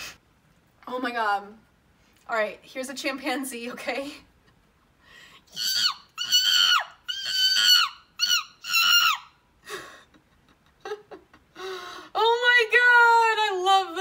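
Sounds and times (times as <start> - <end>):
woman imitating chimpanzee shrieks: 5.5 - 9.4.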